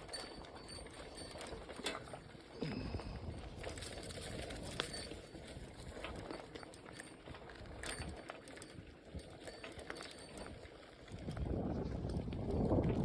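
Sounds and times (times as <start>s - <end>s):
bicycle clicks and rattles: 0.0s - 13.0s
bicycle tyres rumbling: 0.0s - 13.0s.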